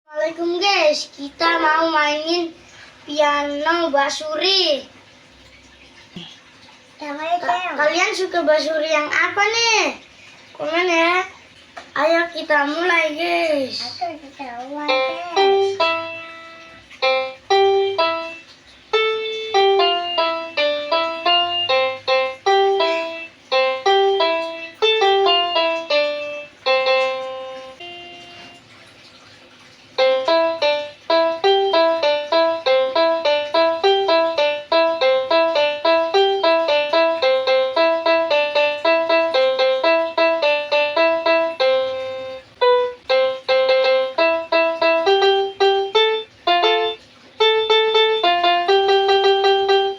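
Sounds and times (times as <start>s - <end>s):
toy keyboard melody of short notes: 14.8s - 28.6s, 30.0s - 49.9s.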